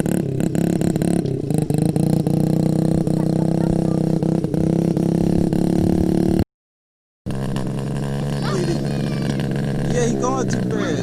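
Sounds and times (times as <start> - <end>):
dirt bike engine running: 0.0 - 6.4, 7.3 - 11.0.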